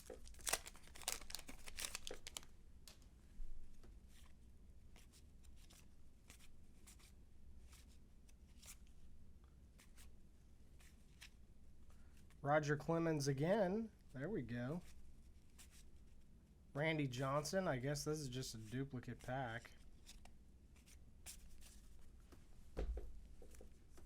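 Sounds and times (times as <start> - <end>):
wrapper tearing and crinkling: 0.0 - 2.5
cards being handled: 0.0 - 3.0, 3.8 - 8.9, 10.8 - 11.4, 18.8 - 22.1.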